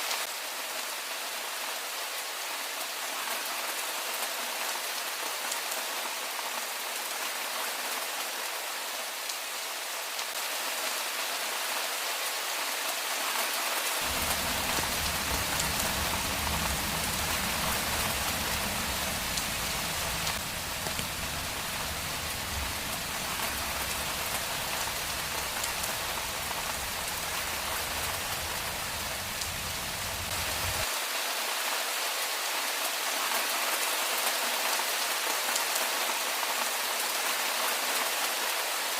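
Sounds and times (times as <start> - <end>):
heavy rain on a street: 0.0 - 38.9
low rumble: 14.1 - 30.8.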